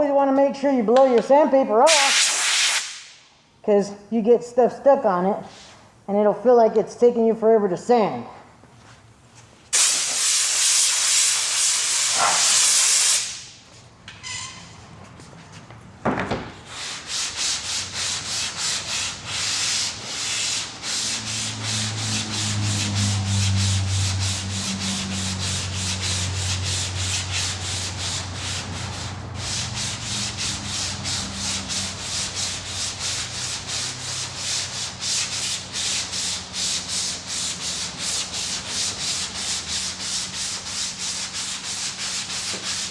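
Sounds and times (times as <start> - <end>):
sandpaper scraping back and forth: 1.9 - 3.0, 9.8 - 13.4, 16.6 - 42.9
compressed air hissing: 1.9 - 3.2, 9.8 - 13.6.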